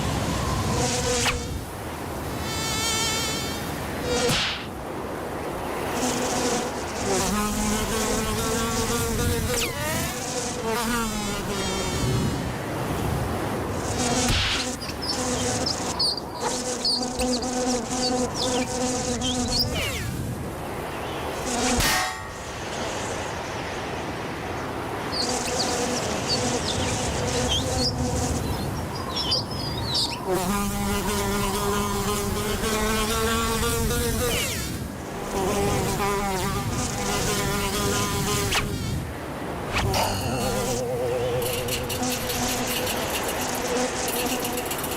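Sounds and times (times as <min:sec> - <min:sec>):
insect-like buzz: 0:02.3 - 0:04.7, 0:05.8 - 0:12.4, 0:13.8 - 0:20.3, 0:21.1 - 0:23.6, 0:30.1 - 0:39.0, 0:39.6 - 0:44.9
insect wings buzzing: 0:13.8 - 0:20.2, 0:39.7 - 0:44.9.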